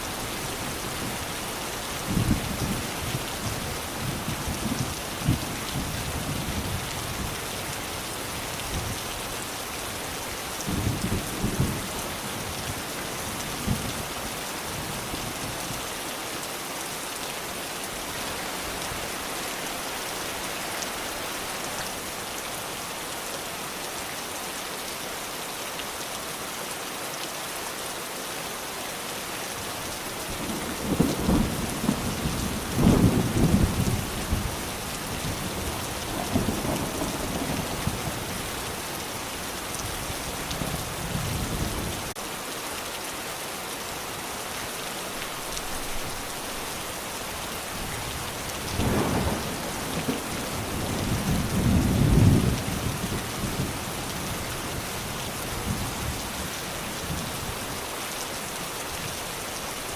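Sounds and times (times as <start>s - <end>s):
steady rain falling: 0.0s - 59.9s
thunder rumbles: 48.7s - 53.7s.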